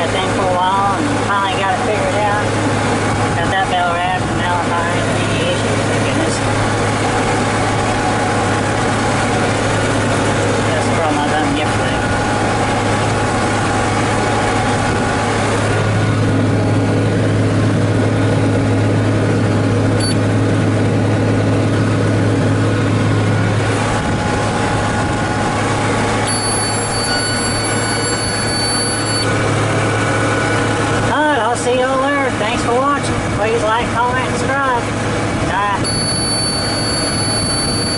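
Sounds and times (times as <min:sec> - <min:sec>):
tractor diesel engine humming: 0:00.0 - 0:37.9
thin high tone: 0:26.2 - 0:29.3, 0:35.8 - 0:37.9.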